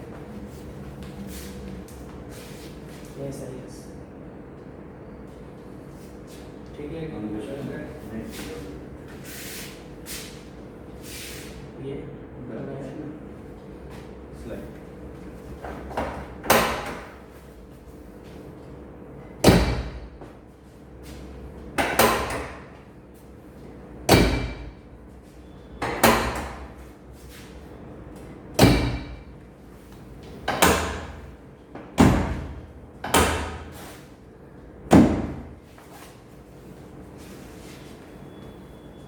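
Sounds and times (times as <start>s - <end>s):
sharp ringing knocks: 19.4s - 20.1s, 24.1s - 24.8s, 28.6s - 29.3s.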